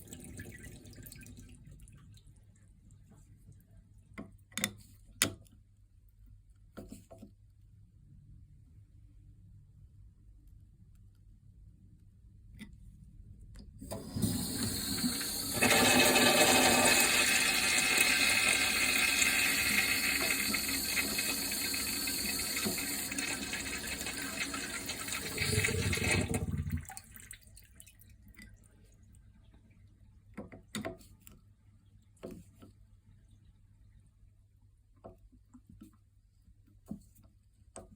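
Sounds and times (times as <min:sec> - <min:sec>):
urinal flushing: 0:00.0 - 0:02.0, 0:13.8 - 0:27.9.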